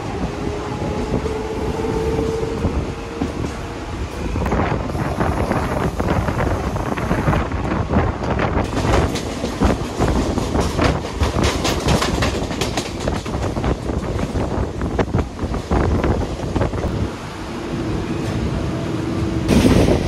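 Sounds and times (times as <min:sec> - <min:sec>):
train rumble: 0:00.0 - 0:20.0
train wheels clattering over rail joints: 0:07.6 - 0:16.5.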